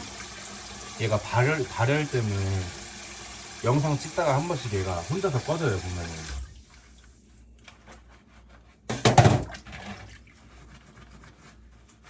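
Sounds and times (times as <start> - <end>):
dishes clattering together: 8.9 - 10.0
dishes clinking in a sink: 8.9 - 10.2.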